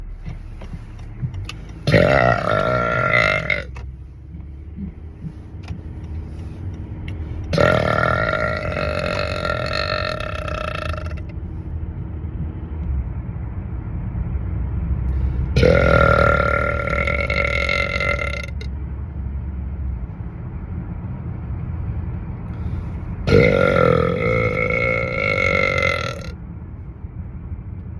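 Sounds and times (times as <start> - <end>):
steady low rumble: 0.0 - 27.9
man burping loudly: 1.8 - 3.8, 7.5 - 11.2, 15.6 - 18.7, 23.3 - 26.4.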